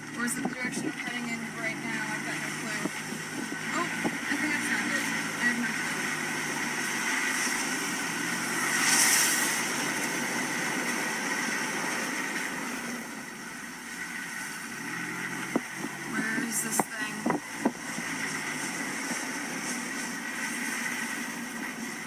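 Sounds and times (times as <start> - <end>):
road noise: 0.0 - 22.0
vehicle running: 0.0 - 22.0
hissing rush: 1.8 - 21.4.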